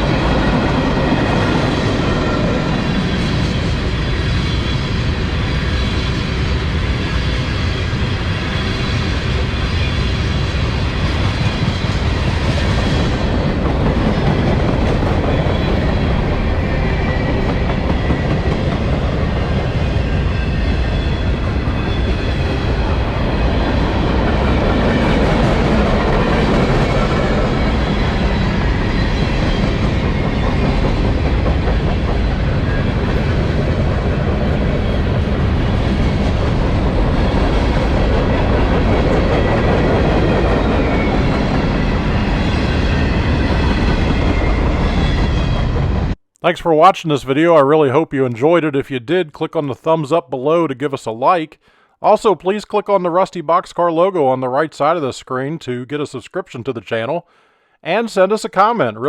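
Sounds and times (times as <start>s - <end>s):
freight train wheels rumbling: 0.0s - 46.2s.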